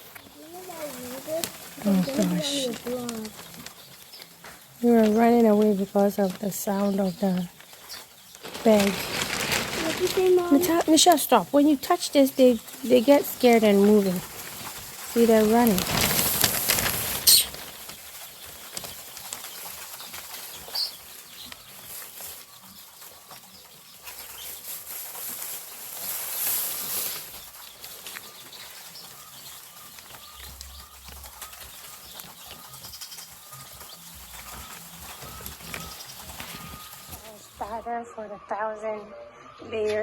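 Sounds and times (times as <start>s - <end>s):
sack rustling: 0.0s - 3.7s, 8.3s - 18.1s, 24.3s - 29.3s, 33.4s - 37.8s
chicks peeping: 0.0s - 40.0s
chicks scurrying: 0.0s - 40.0s.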